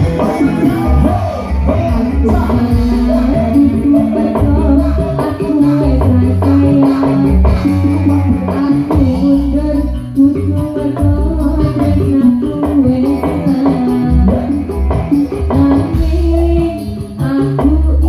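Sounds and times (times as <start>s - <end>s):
steady percussion beat: 0.0s - 17.9s
repeating bass line: 0.0s - 18.0s.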